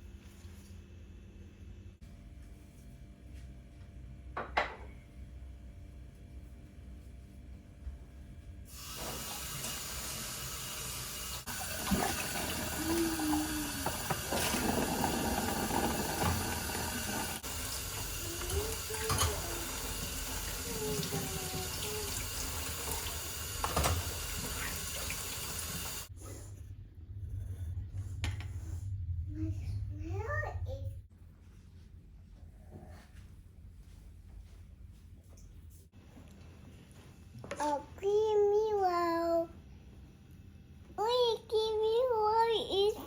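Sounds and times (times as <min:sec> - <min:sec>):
water running: 0:08.7 - 0:26.1.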